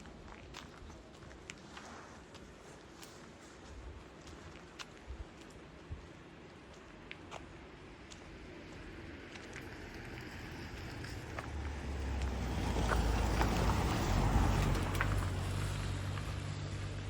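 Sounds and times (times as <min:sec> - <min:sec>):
vehicle engine hum passing: 0:08.6 - 0:17.0.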